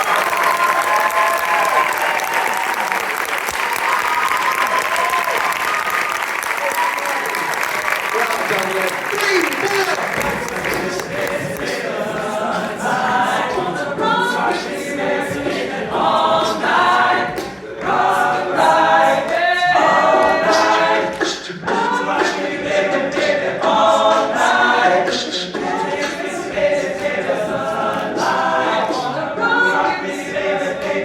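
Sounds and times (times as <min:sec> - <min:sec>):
group singing a cappella: 0:10.1 - 0:31.0.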